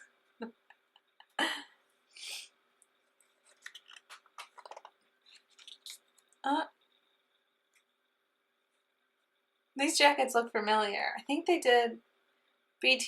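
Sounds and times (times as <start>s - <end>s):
paper pages turning: 3.3s - 6.1s.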